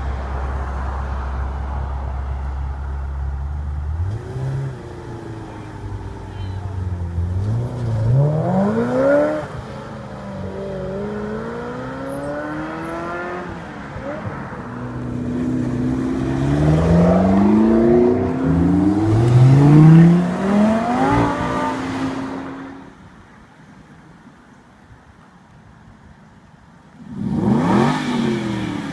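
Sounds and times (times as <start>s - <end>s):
supercar engines accelerating: 2.8s - 22.8s.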